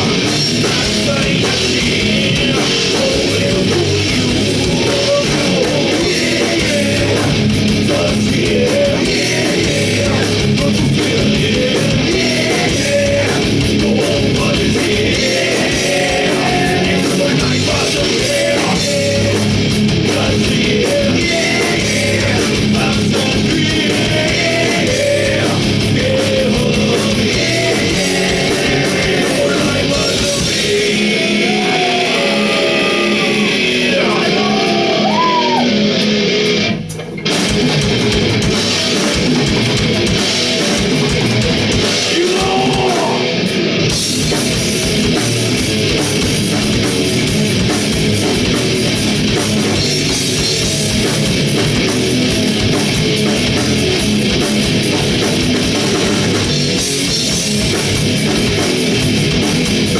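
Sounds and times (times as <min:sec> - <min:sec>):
person singing: 0:00.0 - 0:35.8, 0:42.0 - 0:43.4
heavy metal band playing live: 0:00.0 - 0:59.9.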